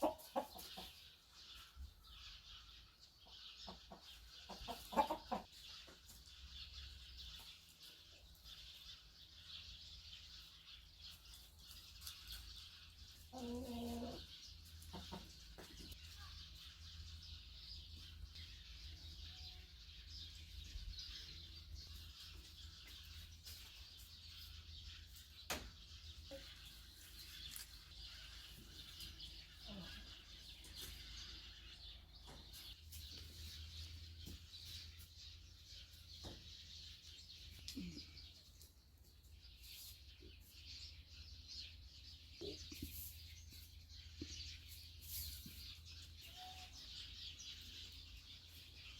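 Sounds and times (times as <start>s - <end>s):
birds chirping: 0.0s - 48.9s.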